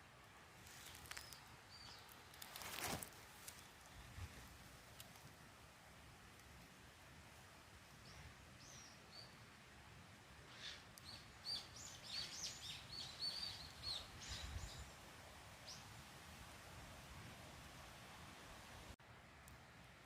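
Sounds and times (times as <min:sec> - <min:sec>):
faint steady hiss: 0:00.0 - 0:20.0
small bird chirping: 0:10.5 - 0:15.0.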